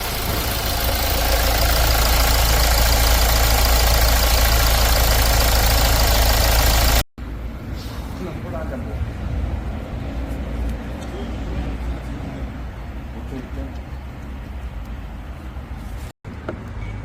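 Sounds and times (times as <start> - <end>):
diesel engine idling with clatter: 0.0 - 8.9.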